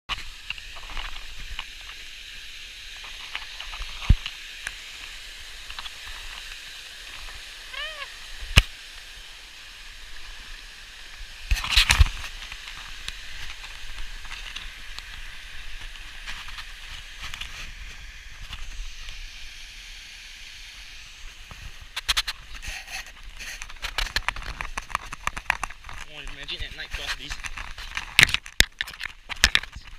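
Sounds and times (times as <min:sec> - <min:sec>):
knocks and scrapes: 0:21.5 - 0:29.9.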